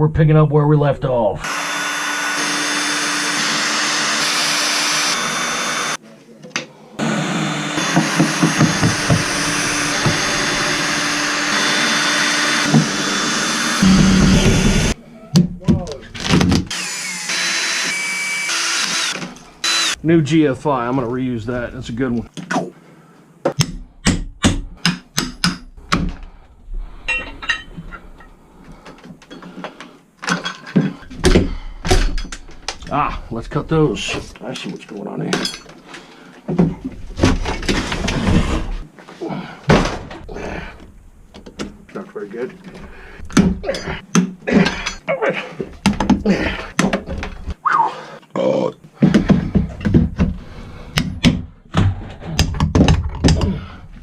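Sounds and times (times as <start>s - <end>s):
high-speed electric tool motor: 1.4s - 6.0s, 7.0s - 15.0s, 16.7s - 20.0s
material knocking and rattling: 51.2s - 53.5s.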